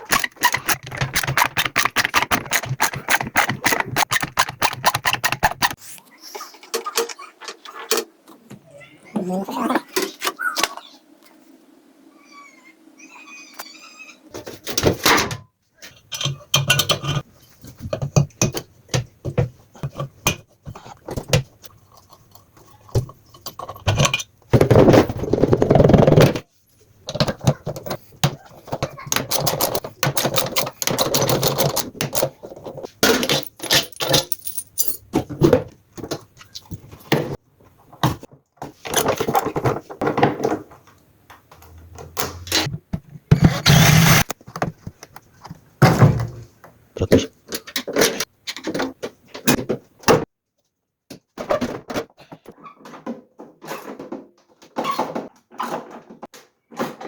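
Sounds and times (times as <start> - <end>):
metal tools clattering: 27.8 - 35.4
metal scraping: 43.3 - 44.3.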